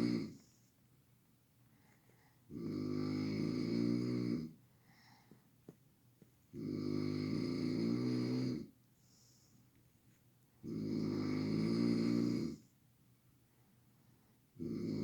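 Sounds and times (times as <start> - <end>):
person snoring loudly: 0.0 - 0.4, 2.5 - 4.5, 6.6 - 8.6, 10.7 - 12.6, 14.6 - 15.0.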